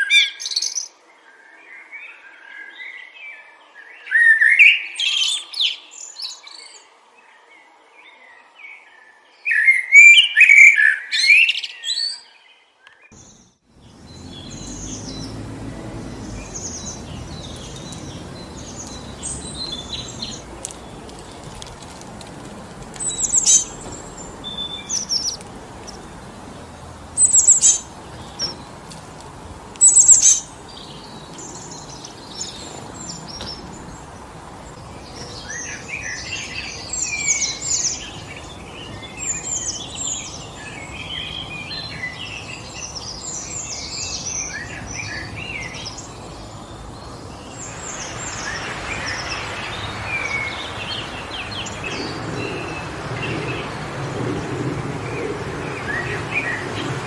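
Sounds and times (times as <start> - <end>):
songbirds singing: 0.0 - 57.0
wind through forest trees: 0.0 - 57.0
bird chirps and calls: 13.2 - 21.9, 22.9 - 29.1, 29.8 - 53.8.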